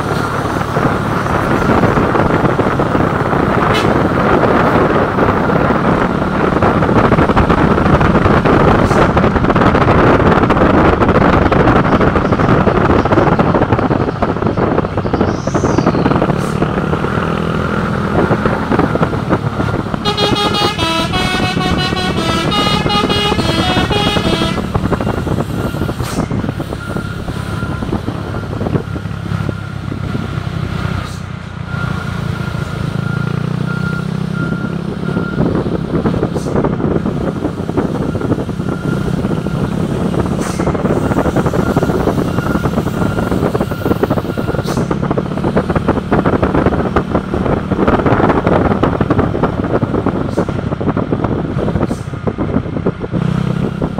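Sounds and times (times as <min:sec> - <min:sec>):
large vehicle engine running: 0:00.0 - 0:53.9
musical multi-tone vehicle horn: 0:19.9 - 0:26.2.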